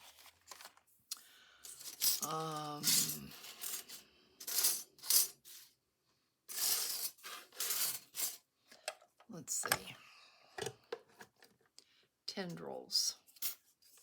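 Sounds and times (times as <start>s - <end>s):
paper rustling: 0.0s - 0.9s
person humming: 2.2s - 3.4s.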